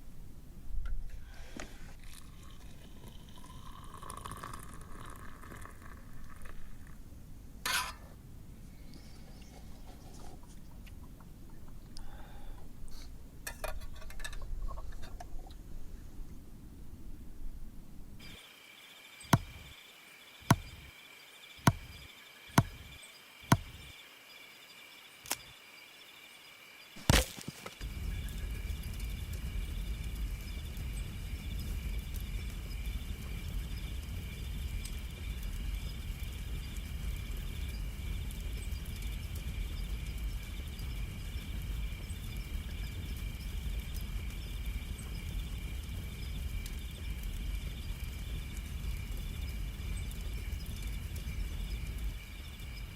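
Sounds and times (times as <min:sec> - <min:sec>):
sharp knocks: 0:19.4 - 0:19.7, 0:20.5 - 0:20.8, 0:21.7 - 0:22.0, 0:22.6 - 0:22.9, 0:23.5 - 0:23.9.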